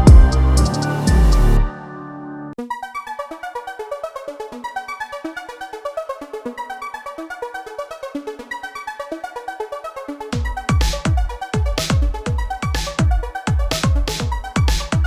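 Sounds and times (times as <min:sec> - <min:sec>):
synthesizer repeating quick notes: 0:10.3 - 0:15.0.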